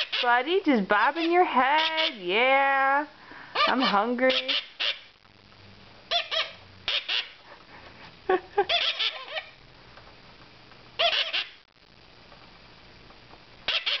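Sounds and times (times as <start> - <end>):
young parakeets beeping calls: 0.0 - 0.4, 1.2 - 2.3, 3.6 - 5.2, 6.1 - 7.4, 8.7 - 9.6, 11.0 - 11.7, 13.6 - 14.0.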